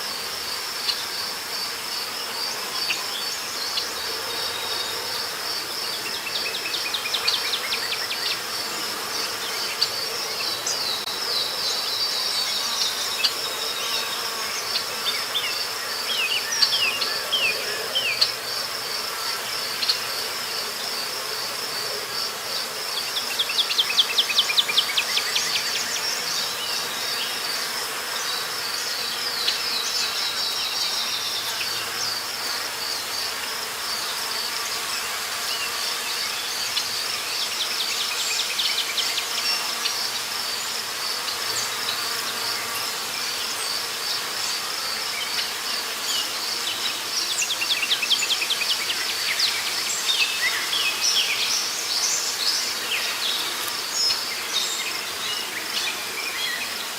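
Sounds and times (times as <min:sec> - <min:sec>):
pulsing insect chorus: 0:00.0 - 0:56.9.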